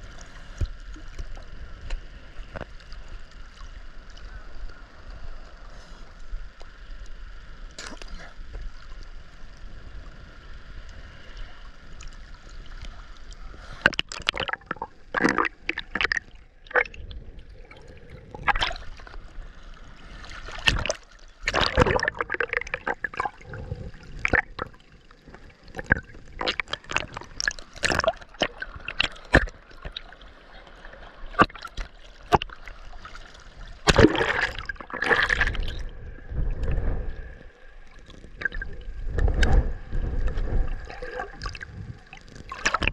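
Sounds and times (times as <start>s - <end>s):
sea water splashing: 10.6s - 42.9s.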